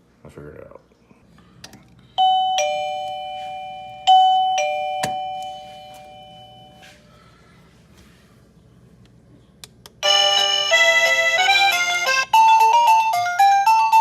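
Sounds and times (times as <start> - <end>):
two-note doorbell chime: 2.2 - 6.8, 10.0 - 11.4.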